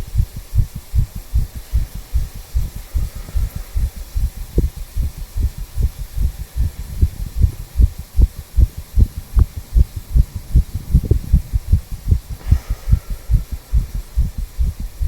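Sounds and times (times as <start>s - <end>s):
heartbeat thumps: 0.0s - 15.0s.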